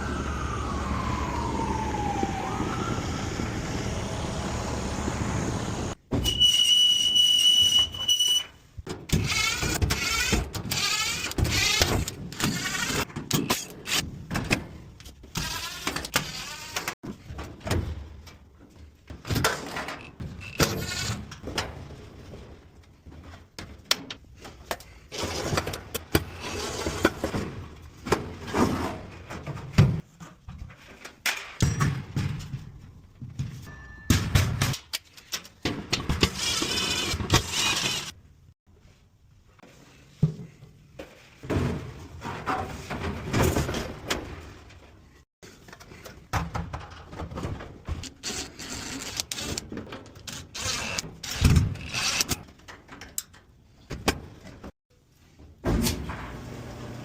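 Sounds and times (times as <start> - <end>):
dryer squeaks and squeals: 6.2 - 8.6
clothes dryer running: 56.0 - 57.0.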